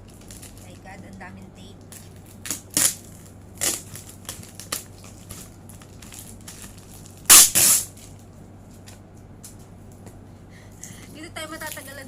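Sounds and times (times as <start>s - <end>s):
packing tape ripping off cardboard: 1.9s - 8.1s.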